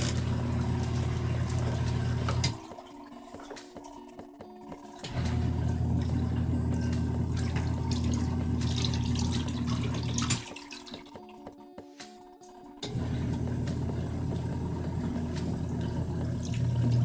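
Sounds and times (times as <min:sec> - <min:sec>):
washing machine motor humming: 0:00.0 - 0:03.6, 0:04.8 - 0:10.8, 0:12.8 - 0:17.0
water churning: 0:00.0 - 0:04.0, 0:04.7 - 0:11.2, 0:12.9 - 0:17.0.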